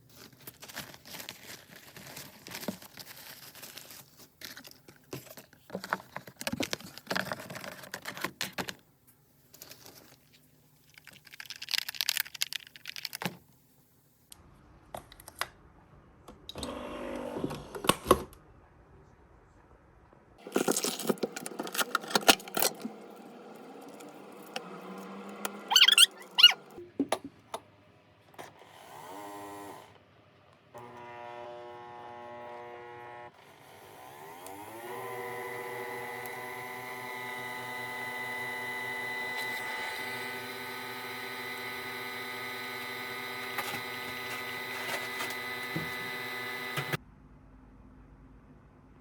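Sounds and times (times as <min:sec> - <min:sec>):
crinkling: 0:00.0 - 0:13.6, 0:20.4 - 0:24.7, 0:39.0 - 0:47.0.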